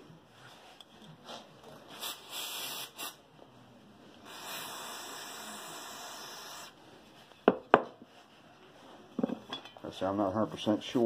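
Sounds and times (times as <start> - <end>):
aerosol spraying: 2.0 - 3.2, 4.2 - 6.7.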